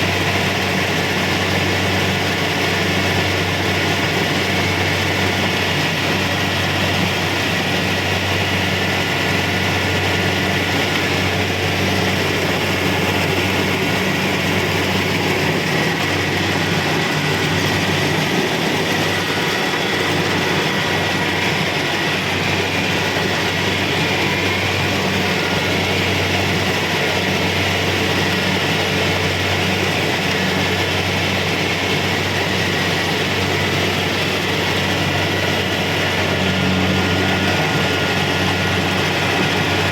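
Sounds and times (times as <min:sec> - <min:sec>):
diesel engine drone: 0:00.0 - 0:39.9
machinery clatter and whir: 0:00.0 - 0:39.9.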